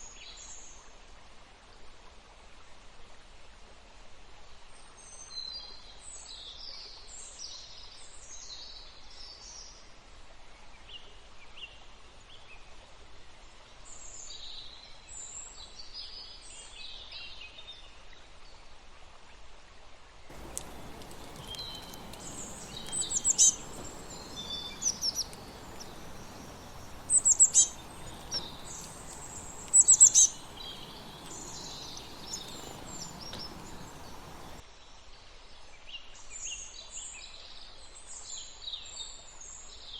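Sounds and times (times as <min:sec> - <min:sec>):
background hiss: 0:20.3 - 0:34.6
small birds chirping: 0:20.3 - 0:34.6.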